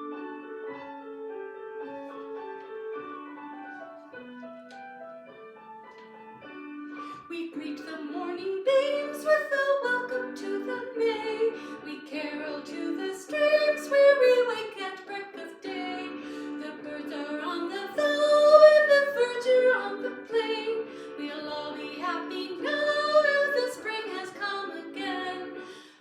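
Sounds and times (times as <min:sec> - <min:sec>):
held accompaniment notes: 0:00.0 - 0:26.0
woman singing: 0:07.1 - 0:26.0.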